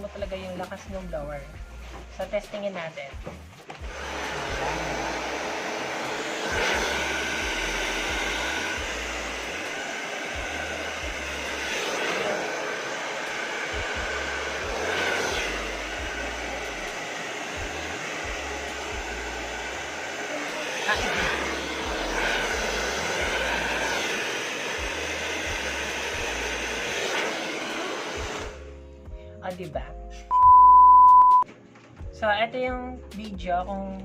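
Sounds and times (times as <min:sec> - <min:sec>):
hair dryer running: 0:03.7 - 0:28.8.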